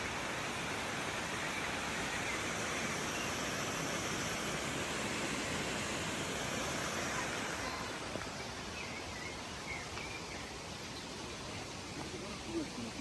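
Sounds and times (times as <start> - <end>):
waterfall rushing: 0.0 - 9.8.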